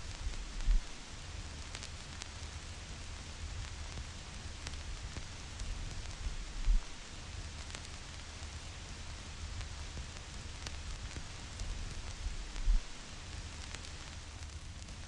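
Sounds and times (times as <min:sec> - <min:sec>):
stylus crackles and pops: 0:00.0 - 0:15.0
vinyl record hiss: 0:00.0 - 0:15.0
low rumble: 0:06.1 - 0:06.9, 0:12.2 - 0:12.9.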